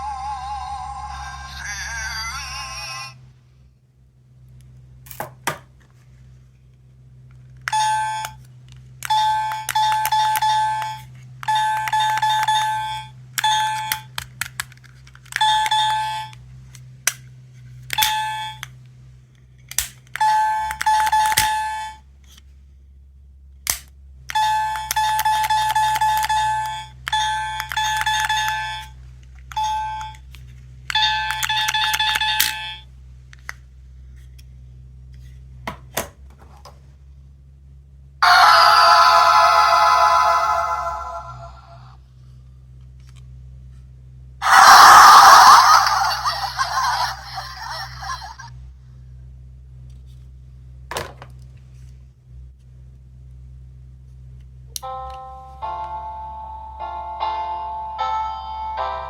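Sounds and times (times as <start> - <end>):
electronic chime tones: 38.2 - 41.7.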